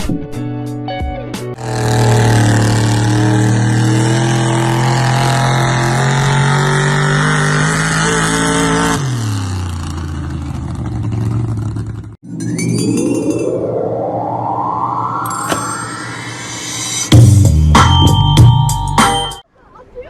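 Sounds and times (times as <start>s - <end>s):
engine running hard: 1.6s - 12.1s.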